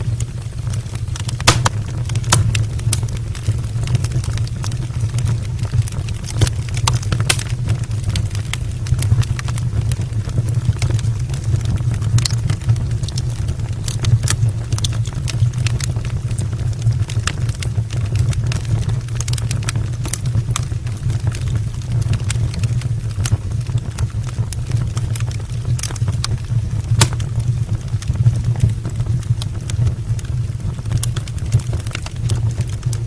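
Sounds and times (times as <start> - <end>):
fire crackles and pops: 0.0 - 33.0
low rumble of flame: 0.0 - 33.0.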